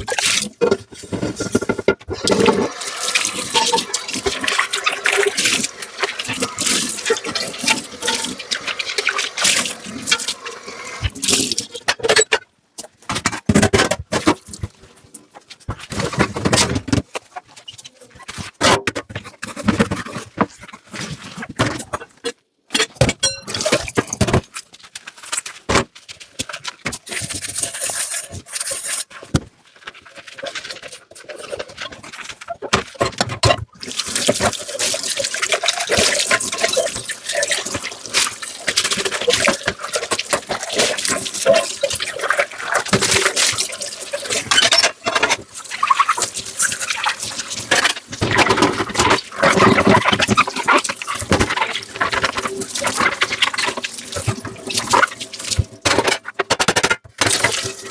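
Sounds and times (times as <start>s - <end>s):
tap water running: 0.0s - 11.8s, 33.8s - 56.3s, 57.2s - 57.9s
dishes clinking in sink: 22.8s - 24.4s.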